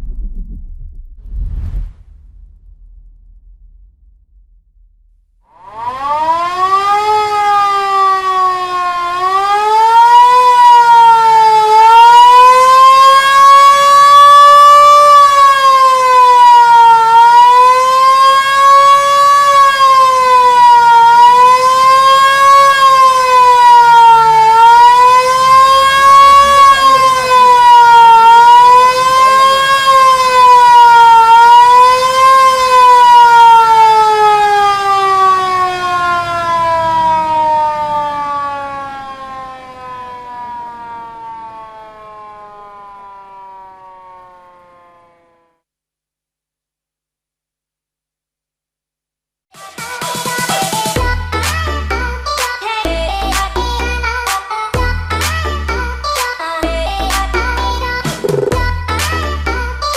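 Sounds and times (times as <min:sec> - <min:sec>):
police siren wailing: 0:05.5 - 0:45.6, 0:50.1 - 0:59.9.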